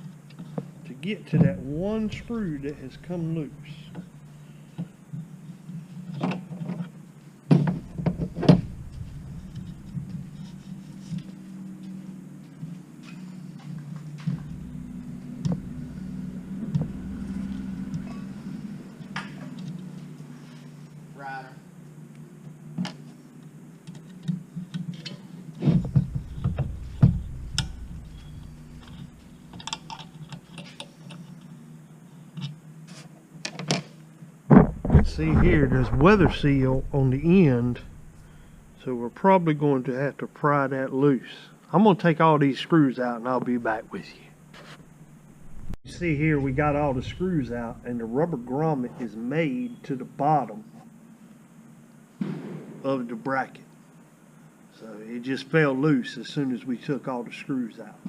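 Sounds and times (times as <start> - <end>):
steady low hum: 0.0 - 33.4, 34.0 - 57.2
heavier handling knocks: 7.5 - 10.6, 25.7 - 29.4, 34.5 - 38.8.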